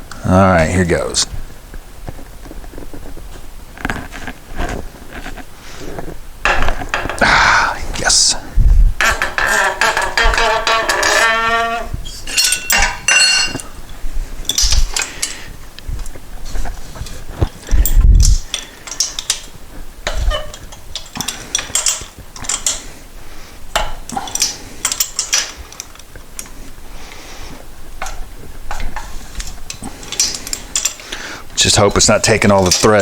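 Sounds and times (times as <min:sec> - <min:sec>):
heavy metallic knock: 0:06.5 - 0:07.8
metallic clicks and scraping: 0:09.0 - 0:23.1, 0:23.7 - 0:33.0.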